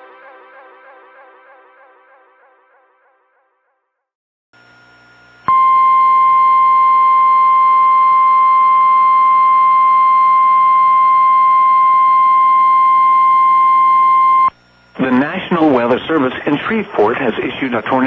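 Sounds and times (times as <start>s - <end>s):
faint hum: 4.6s - 18.0s.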